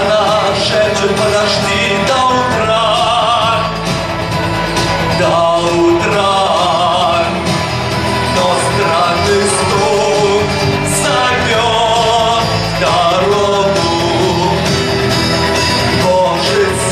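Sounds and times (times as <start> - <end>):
instrumental accompaniment: 0.0 - 16.9
man singing: 0.0 - 16.9.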